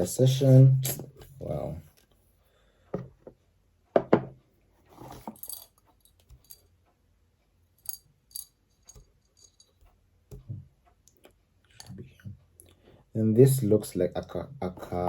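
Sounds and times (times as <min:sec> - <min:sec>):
light ringing clinks: 0:07.8 - 0:09.8.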